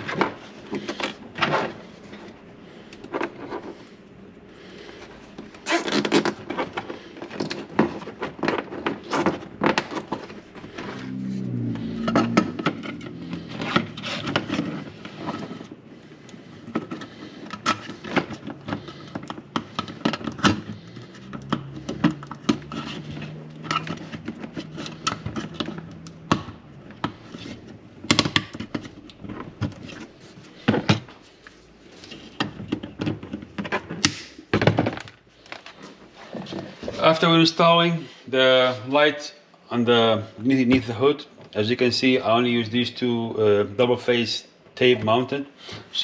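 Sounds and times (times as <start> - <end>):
hands handling parts: 0.0 - 11.2, 11.8 - 37.2.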